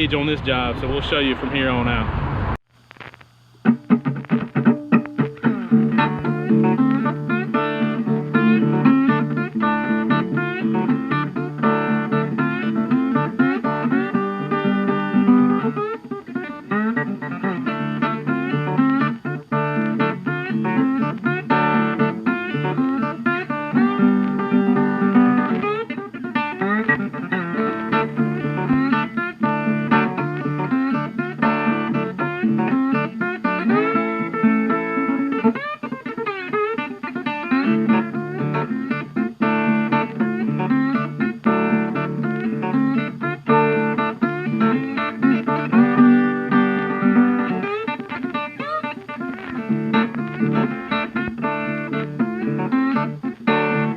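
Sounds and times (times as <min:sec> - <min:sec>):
blues acoustic guitar picking: 0:03.6 - 0:53.9.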